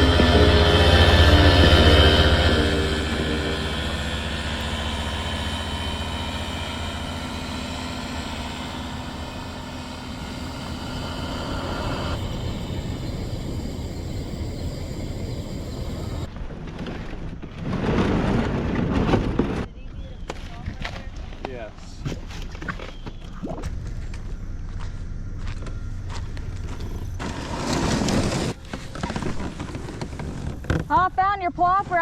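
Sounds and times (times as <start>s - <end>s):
passing vehicle engine drone: 0.0s - 16.3s.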